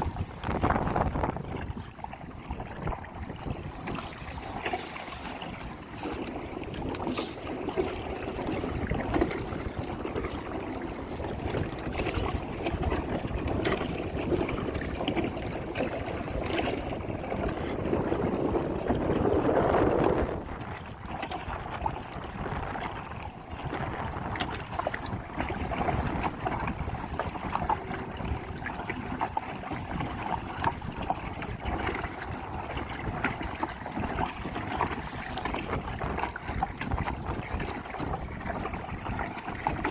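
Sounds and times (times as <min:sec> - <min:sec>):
small water splashes: 0:00.0 - 0:39.9
water rushing around kayak: 0:00.0 - 0:39.9
wind on microphone: 0:00.0 - 0:39.9.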